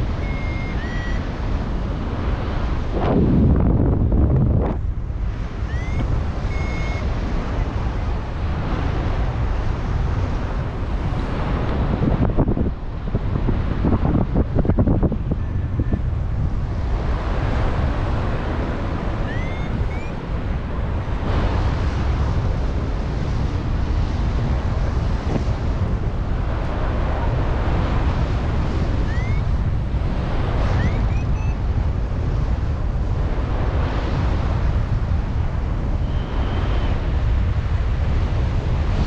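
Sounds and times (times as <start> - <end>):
wind buffeting microphone: 0.0 - 39.0
faint rising chirps: 0.2 - 1.2, 5.7 - 7.0.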